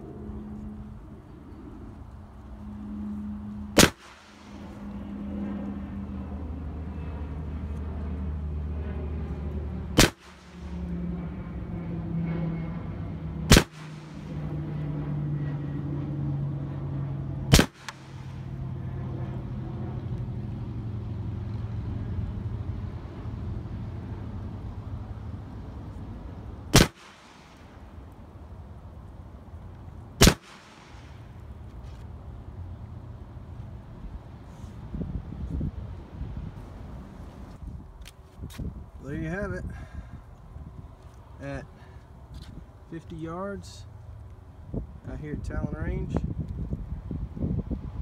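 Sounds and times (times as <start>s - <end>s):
steady low hum: 0.0s - 48.0s
rifle shots: 3.8s - 4.6s, 10.0s - 10.6s, 13.5s - 14.3s, 17.5s - 18.4s, 26.7s - 27.7s, 30.2s - 31.2s.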